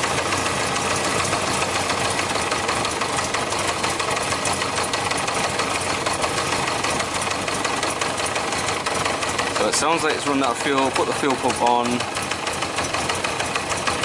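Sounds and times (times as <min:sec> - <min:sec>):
motorcycle engine running: 0:00.0 - 0:14.0.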